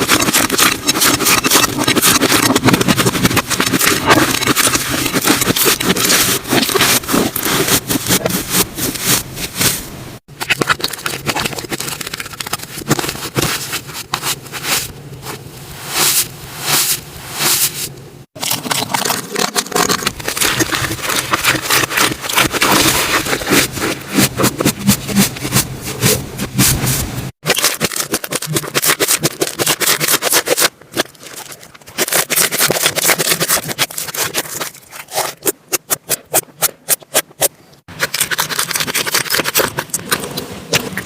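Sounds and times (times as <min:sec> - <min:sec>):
slime squishing and crackling: 0:00.0 - 0:41.0.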